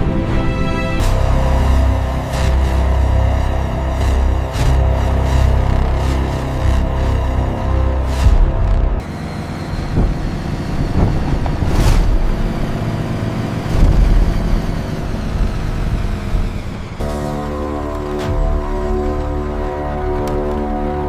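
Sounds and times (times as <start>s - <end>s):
low mechanical rumble: 0.0s - 21.0s
short whooshes: 11.0s - 12.7s.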